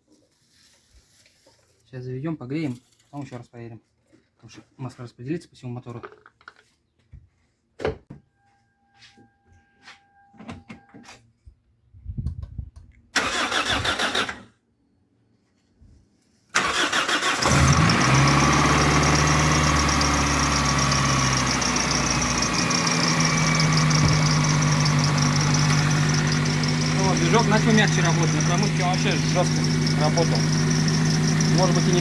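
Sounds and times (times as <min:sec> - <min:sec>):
starter motor cranking: 0:13.2 - 0:14.4, 0:16.6 - 0:32.0
car engine idling: 0:16.7 - 0:32.0.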